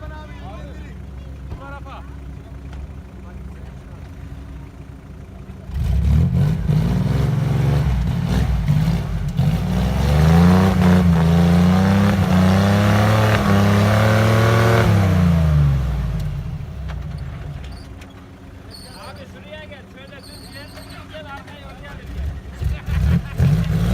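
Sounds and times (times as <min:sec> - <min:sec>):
engine revving hard: 0:05.7 - 0:16.7, 0:22.0 - 0:23.9.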